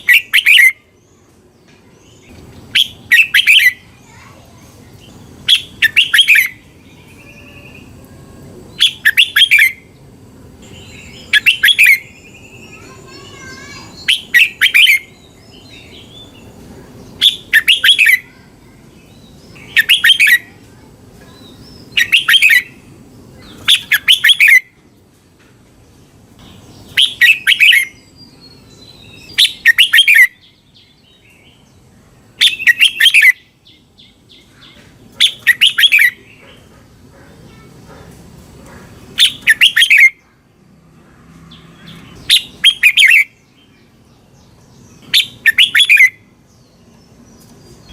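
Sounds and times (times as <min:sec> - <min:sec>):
bird singing whistled notes: 0:00.0 - 0:00.9, 0:02.1 - 0:04.2, 0:05.4 - 0:07.9, 0:08.7 - 0:09.9, 0:10.6 - 0:13.2, 0:13.9 - 0:16.5, 0:17.2 - 0:18.4, 0:19.0 - 0:20.5, 0:21.4 - 0:22.8, 0:23.4 - 0:24.7, 0:26.8 - 0:31.7, 0:32.4 - 0:34.5, 0:35.2 - 0:36.2, 0:39.2 - 0:40.2, 0:41.6 - 0:43.9, 0:44.7 - 0:46.8.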